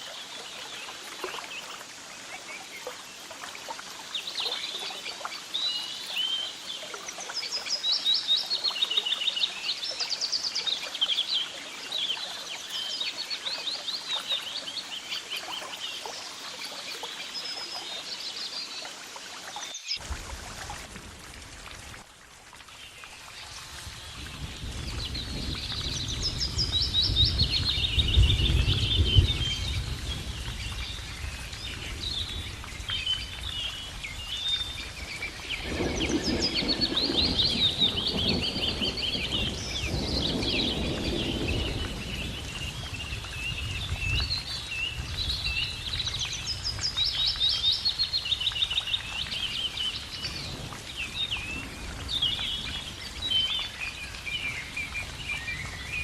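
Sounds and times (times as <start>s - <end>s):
wild birds singing: 22.7s - 56.0s.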